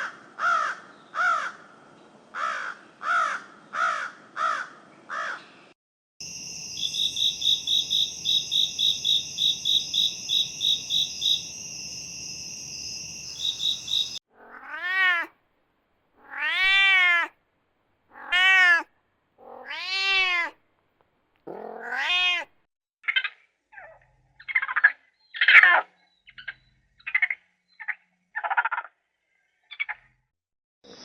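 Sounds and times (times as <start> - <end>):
cat meowing: 14.4 - 15.3, 16.2 - 17.3, 18.1 - 20.6, 21.5 - 22.6.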